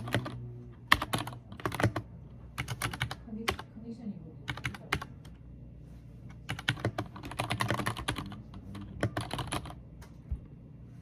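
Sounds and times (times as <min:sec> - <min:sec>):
computer keyboard typing: 0:00.0 - 0:03.7, 0:04.4 - 0:05.4, 0:06.5 - 0:09.8.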